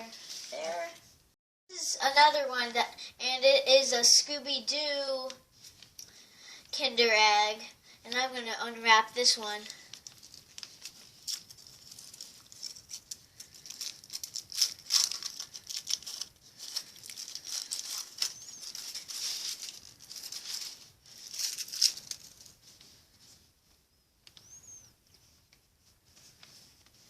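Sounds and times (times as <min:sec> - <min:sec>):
foil wrapper crinkling: 0:09.7 - 0:22.6.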